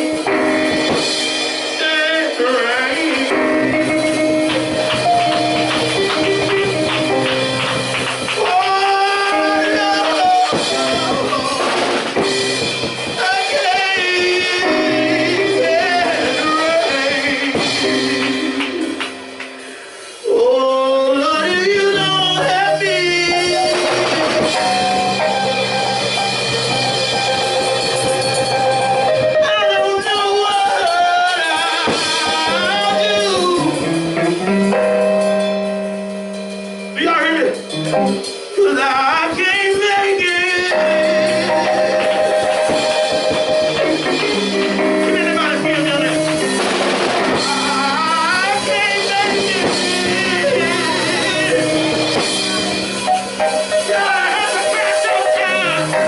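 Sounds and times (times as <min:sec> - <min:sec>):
drums: 0:00.0 - 0:56.0
guitar: 0:00.0 - 0:56.0
sustained keyboard chords: 0:00.0 - 0:56.0
person singing long notes: 0:01.8 - 0:07.4, 0:08.4 - 0:12.5, 0:13.2 - 0:19.4, 0:20.2 - 0:24.7, 0:29.3 - 0:34.0, 0:47.3 - 0:52.8, 0:53.6 - 0:56.0.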